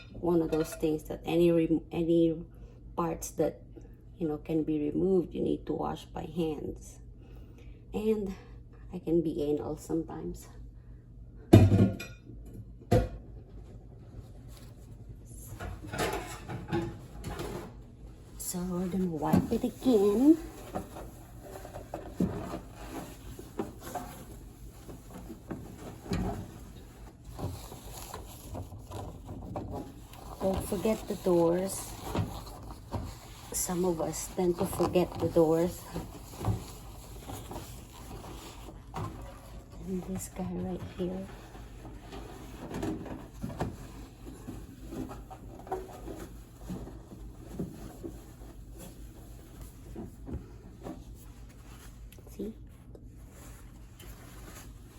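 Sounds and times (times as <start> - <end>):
cloth wiping inside microwave: 14.0 - 54.9.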